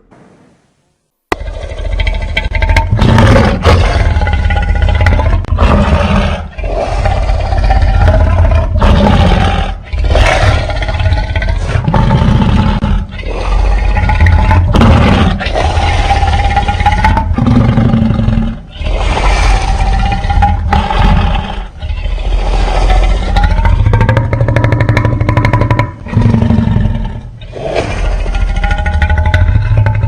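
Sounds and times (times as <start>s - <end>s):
monster roars: 1.4s - 29.8s.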